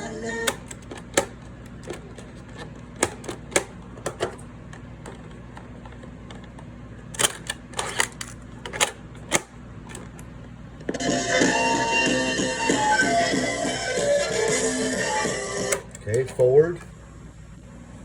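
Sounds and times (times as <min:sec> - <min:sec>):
low electrical hum: 0:00.0 - 0:18.0
cassette deck keys clicking: 0:00.4 - 0:10.5, 0:15.6 - 0:16.9.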